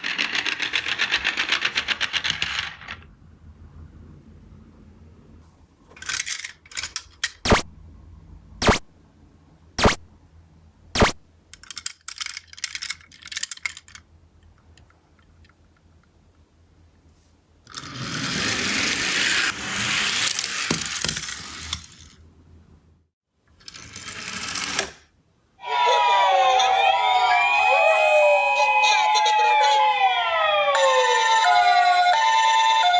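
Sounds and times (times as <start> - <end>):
toy cars clicking and clattering: 0.0 - 3.1, 5.9 - 7.6, 11.5 - 15.8, 17.6 - 22.2, 23.5 - 25.1
toy cars rolling down a slope: 0.0 - 3.1, 6.0 - 7.4, 11.6 - 14.1, 17.6 - 22.2, 23.5 - 25.2
toy siren wailing: 25.6 - 32.9.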